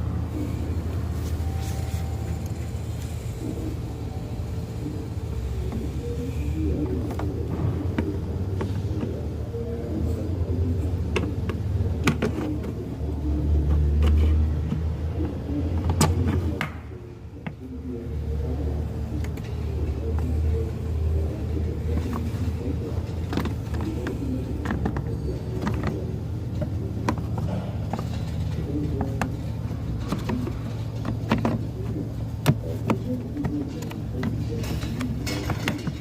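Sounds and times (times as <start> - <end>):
truck engine idling: 0.0 - 36.0.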